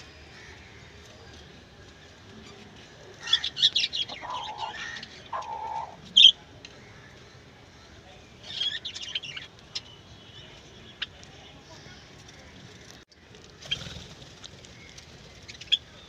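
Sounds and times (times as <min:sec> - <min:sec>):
chickens chirping and calling: 0:03.2 - 0:06.4.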